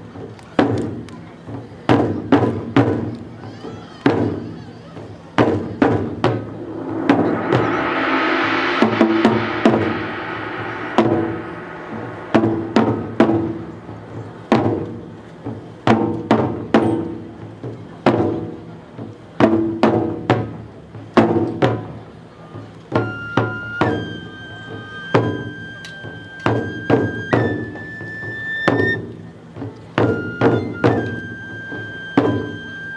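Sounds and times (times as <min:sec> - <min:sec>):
loud drum strikes: 0:05.4 - 0:18.6
rushing noise: 0:05.6 - 0:16.1
high held note: 0:06.0 - 0:15.4.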